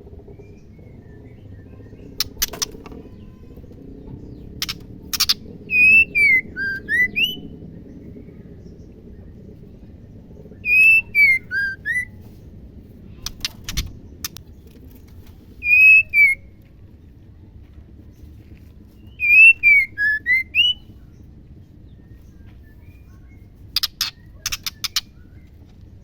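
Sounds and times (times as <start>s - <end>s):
sharp bird clicks: 2.1s - 3.1s, 4.6s - 5.4s, 13.2s - 15.0s, 23.8s - 25.6s
bird whistled call: 5.2s - 7.4s, 10.6s - 12.1s, 15.6s - 16.5s, 19.1s - 20.8s.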